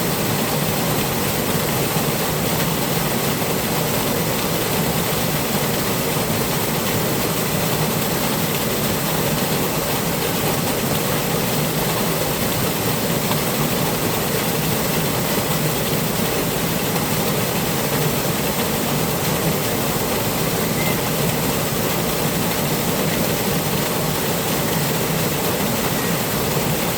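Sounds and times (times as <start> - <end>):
water rushing: 0.0 - 26.9.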